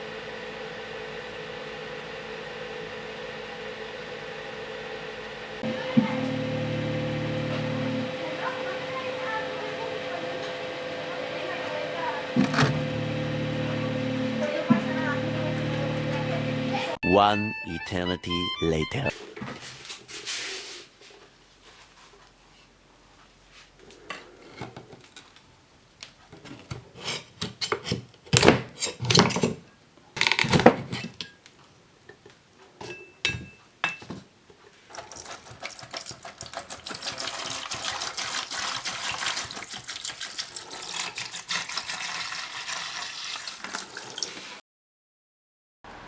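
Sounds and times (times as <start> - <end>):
water running into sink: 12.4 - 17.0, 34.9 - 44.6.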